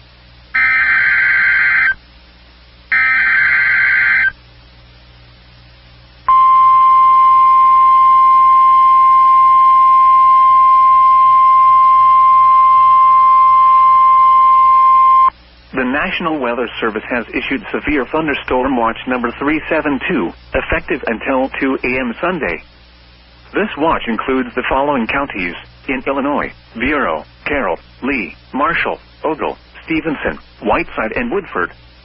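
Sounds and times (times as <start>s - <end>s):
harsh data screech: 0.6s - 2.0s, 2.9s - 4.3s.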